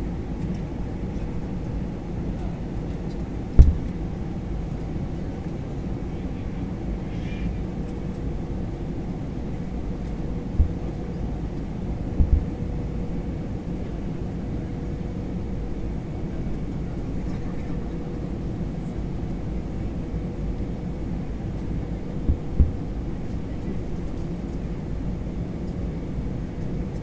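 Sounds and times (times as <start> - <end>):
aircraft cabin rumble: 0.0 - 27.0
faint steady hum: 0.0 - 27.0
low thumps: 3.6 - 3.9, 10.6 - 10.8, 12.2 - 12.5, 22.3 - 22.9.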